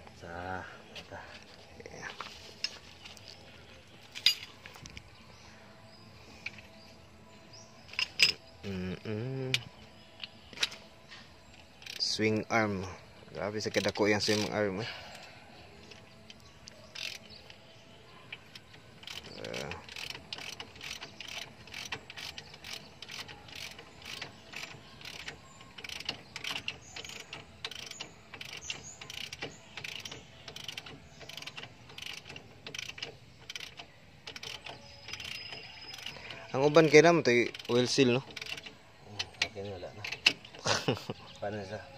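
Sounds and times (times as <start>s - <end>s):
hand tools clicking on metal: 16.0s - 17.6s, 18.3s - 40.8s.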